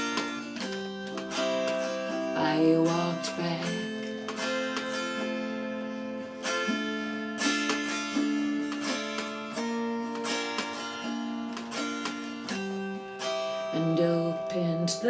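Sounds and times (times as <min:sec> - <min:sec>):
acoustic guitar strumming chords: 0:00.0 - 0:15.0.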